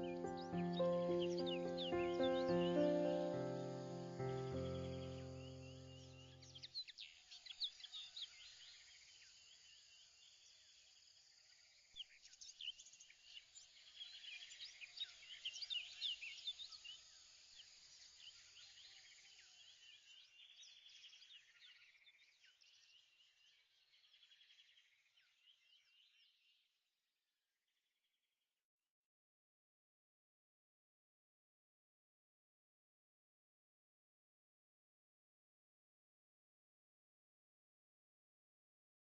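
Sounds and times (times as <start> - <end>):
birds chirping: 0.0 - 6.7.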